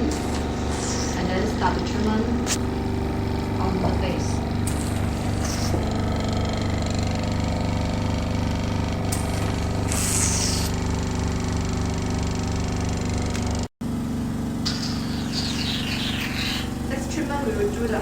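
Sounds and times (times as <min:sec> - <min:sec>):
suction pump pulsing hum: 0:00.0 - 0:18.0
suction hiss: 0:09.2 - 0:10.9.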